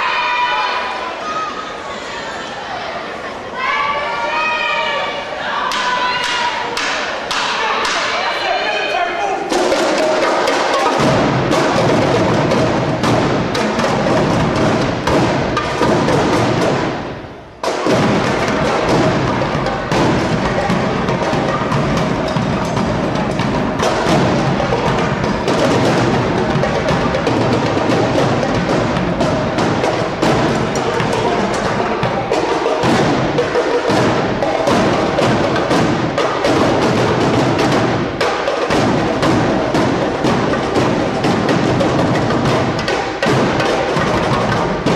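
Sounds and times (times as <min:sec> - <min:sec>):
snare and bass drums playing: 0:09.5 - 0:44.9.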